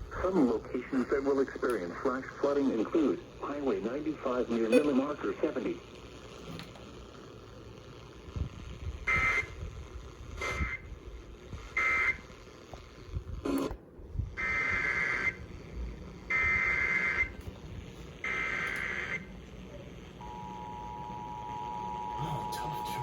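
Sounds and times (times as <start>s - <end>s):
radio background hiss: 0.0s - 23.0s
buzzy two-tone data bursts: 8.7s - 12.7s, 14.4s - 17.4s, 18.2s - 19.4s.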